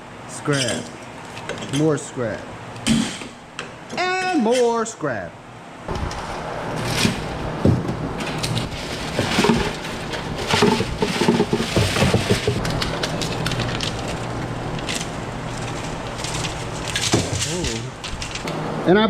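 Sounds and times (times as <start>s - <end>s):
steady low hum: 5.2s - 18.9s
scrap metal crackling and clinking: 8.2s - 18.5s.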